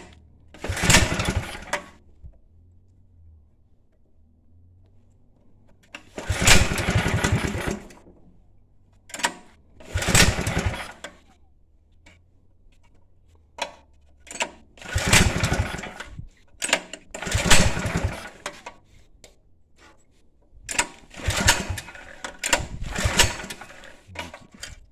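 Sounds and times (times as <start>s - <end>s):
engine cranking without starting: 0.0s - 2.1s, 5.7s - 11.3s, 13.6s - 19.1s, 20.5s - 24.9s.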